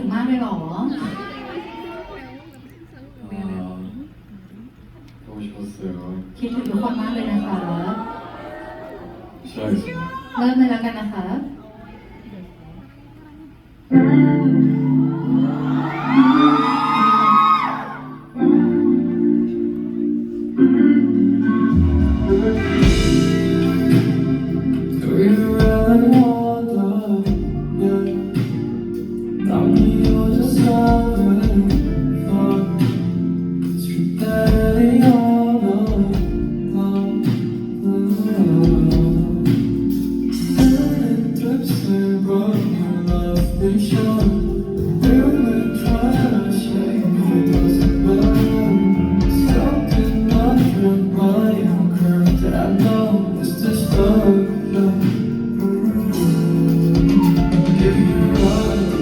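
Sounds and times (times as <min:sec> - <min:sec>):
guitar-led backing music: 0:13.8 - 0:59.0
man singing: 0:13.9 - 0:19.5, 0:20.6 - 0:59.0.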